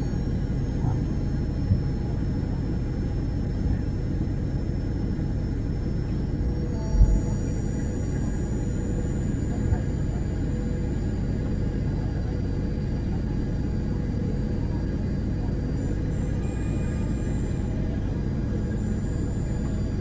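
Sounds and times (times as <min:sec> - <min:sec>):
airliner cabin rumble: 0:00.0 - 0:20.0
faint high tones: 0:15.8 - 0:20.0.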